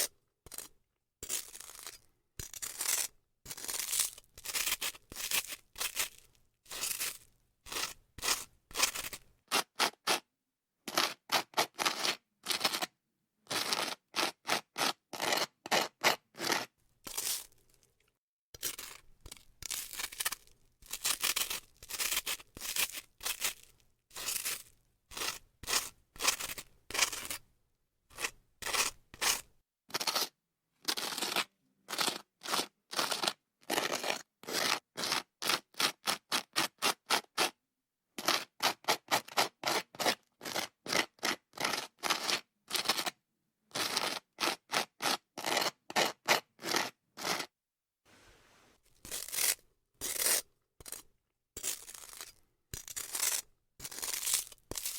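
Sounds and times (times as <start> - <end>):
knife scraping butter on toast: 0.0 - 10.2, 10.9 - 12.8, 13.5 - 17.8, 18.6 - 27.4, 28.1 - 37.6, 43.7 - 47.5, 48.9 - 54.9.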